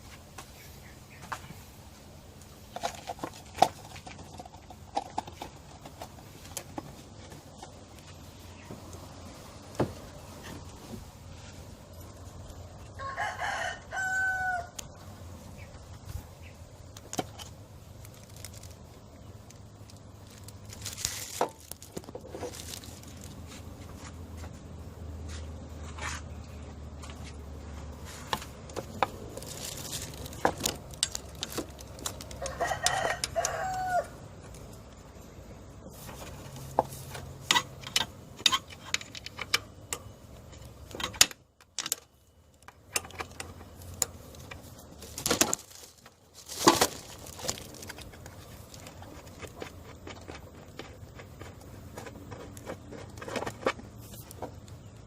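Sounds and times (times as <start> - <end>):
rooster crowing: 12.9 - 14.8, 32.4 - 34.2.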